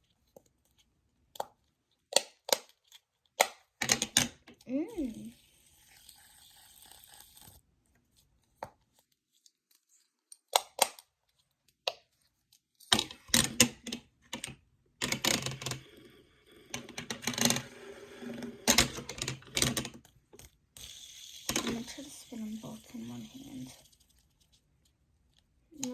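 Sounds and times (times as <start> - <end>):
fidget toys clicking and rattling: 16.8 - 24.1.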